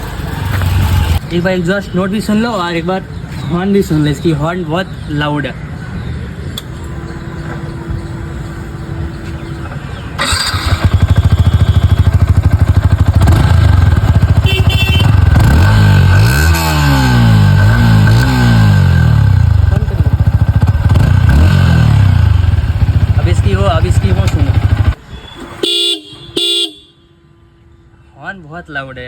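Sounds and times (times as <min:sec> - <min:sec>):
motorcycle engine idling and revving: 0:00.0 - 0:01.6, 0:06.6 - 0:26.9.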